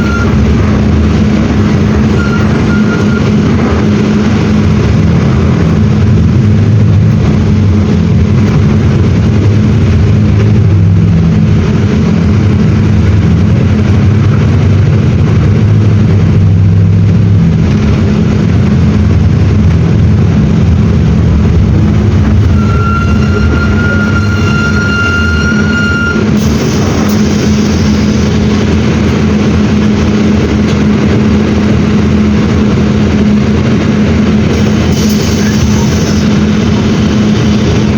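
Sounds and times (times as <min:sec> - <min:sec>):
steady high-pitched tone: 0:00.0 - 0:06.3, 0:20.4 - 0:32.6
diesel bus engine running: 0:00.0 - 0:37.9.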